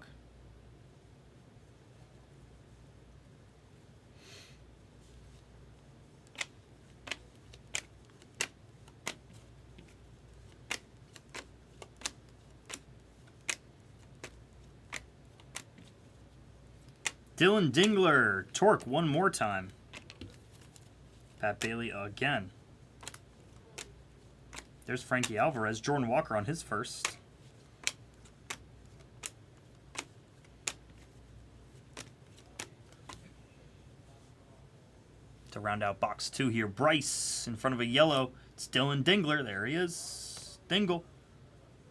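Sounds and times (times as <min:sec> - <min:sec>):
trading cards clicking in hand: 0:06.3 - 0:16.0, 0:16.7 - 0:18.0, 0:19.7 - 0:21.9, 0:23.0 - 0:25.4, 0:26.5 - 0:33.2.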